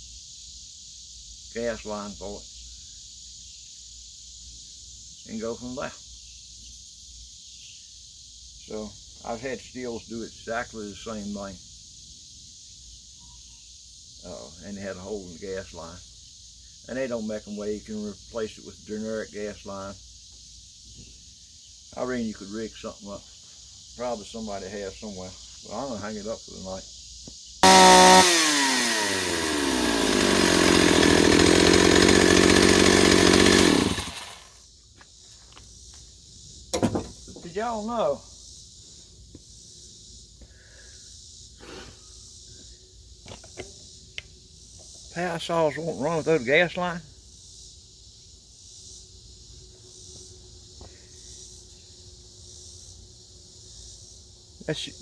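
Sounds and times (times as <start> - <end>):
insects buzzing: 0.0 - 55.0
chainsaw engine revving and idling: 27.6 - 34.6.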